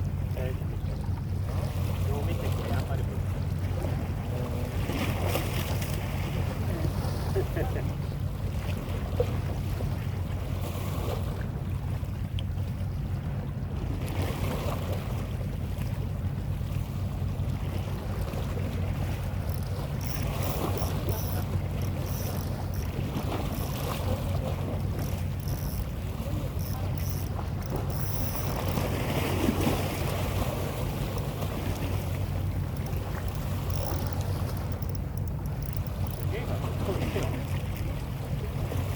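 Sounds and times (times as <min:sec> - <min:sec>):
steady low hum: 0:15.0 - 0:38.9
sea waves washing: 0:16.2 - 0:38.9.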